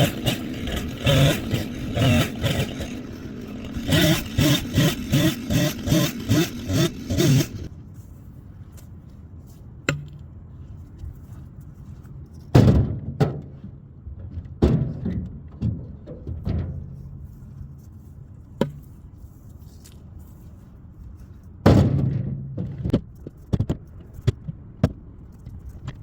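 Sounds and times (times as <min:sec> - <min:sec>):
engine running with pulsing beat: 0:00.0 - 0:07.7.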